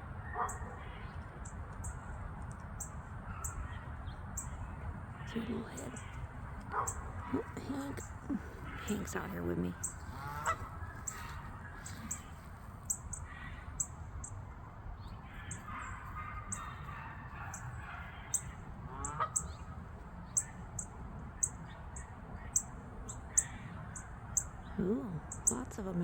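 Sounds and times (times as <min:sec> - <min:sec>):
low outdoor background: 0:00.0 - 0:26.0
geese honking: 0:03.2 - 0:24.5.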